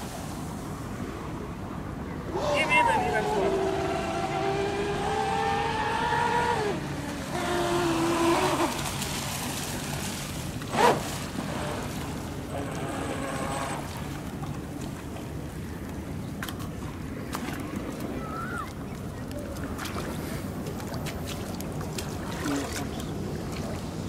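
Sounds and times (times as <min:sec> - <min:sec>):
boat motor whining: 0:02.3 - 0:09.1, 0:10.6 - 0:14.8.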